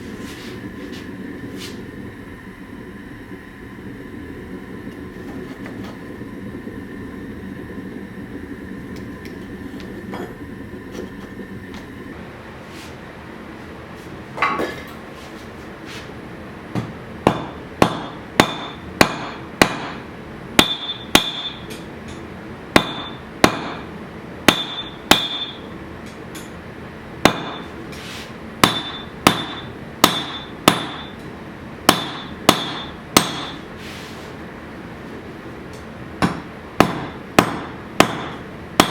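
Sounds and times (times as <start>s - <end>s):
hammer striking steel on anvil: 17.2s - 20.0s, 20.6s - 22.2s, 22.8s - 23.8s, 24.5s - 25.7s, 27.2s - 27.7s, 28.6s - 31.2s, 31.9s - 33.6s, 36.2s - 38.9s.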